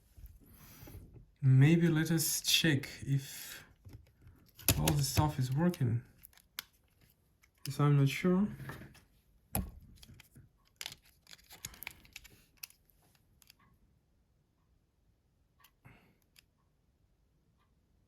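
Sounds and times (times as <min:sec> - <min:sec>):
phone handling clicks: 0:03.9 - 0:06.8.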